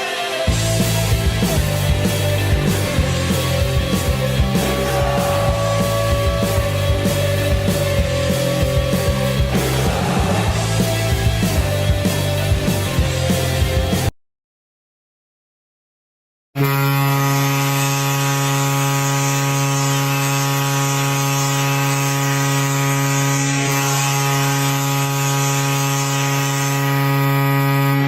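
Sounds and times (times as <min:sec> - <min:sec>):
low air horn blast: 0:00.6 - 0:13.2.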